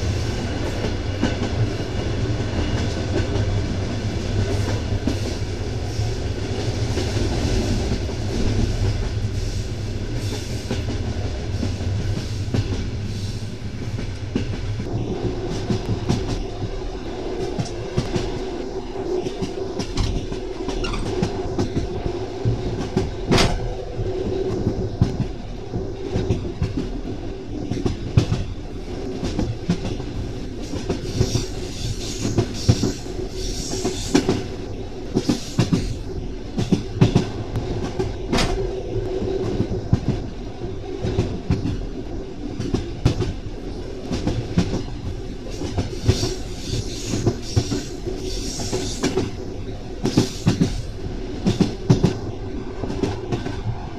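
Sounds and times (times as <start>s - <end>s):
train wheels clattering: 29.2s - 34.5s, 35.1s - 38.6s, 44.0s - 52.2s.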